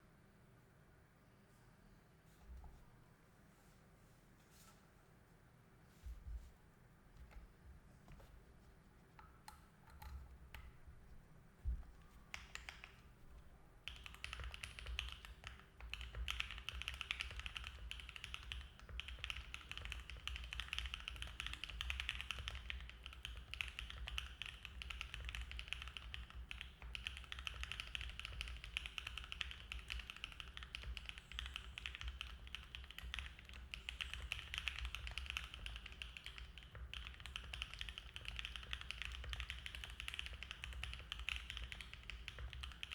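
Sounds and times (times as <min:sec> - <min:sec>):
typing on mechanical keyboard: 0:12.0 - 0:42.9.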